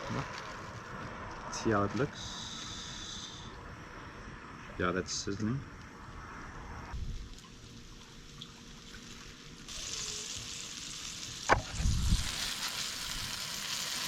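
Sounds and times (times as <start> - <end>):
fish frying in hot oil: 7.2 - 14.0.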